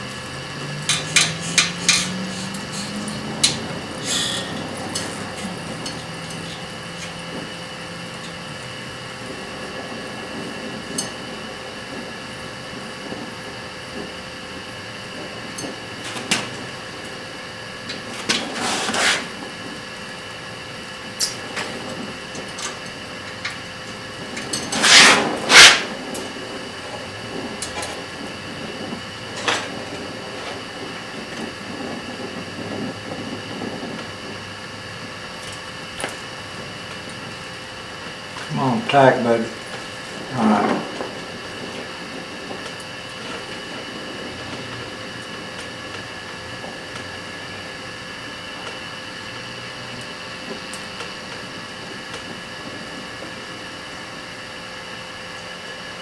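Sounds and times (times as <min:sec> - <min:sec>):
welding torch hissing: 0:00.0 - 0:56.0
sharp metal taps: 0:00.9 - 0:04.2.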